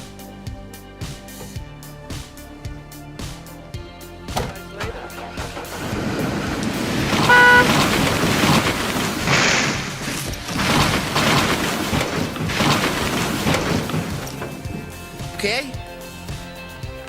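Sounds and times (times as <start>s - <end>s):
noisy outdoor background: 0.0s - 17.0s
horn toot: 7.1s - 8.8s.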